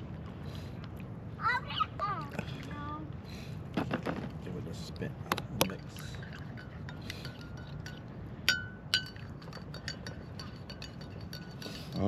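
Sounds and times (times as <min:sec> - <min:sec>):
spoon clinking in coffee cup: 0:06.0 - 0:12.0.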